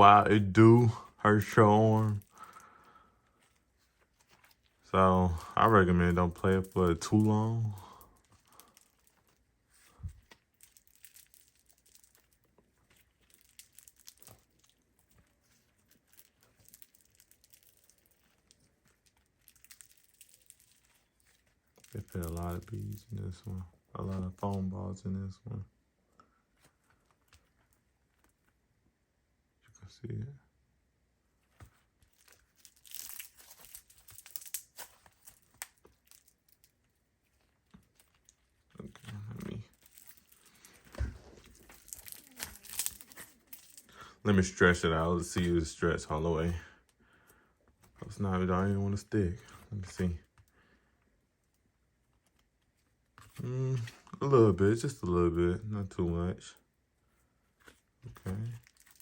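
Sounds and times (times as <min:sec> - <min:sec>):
slime crackling and popping: 0:00.0 - 0:23.6, 0:31.7 - 0:45.8, 0:57.6 - 0:59.0.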